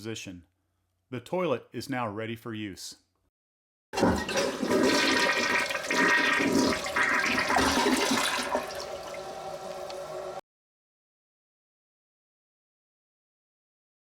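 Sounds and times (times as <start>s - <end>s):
toilet flushing: 4.0s - 10.4s.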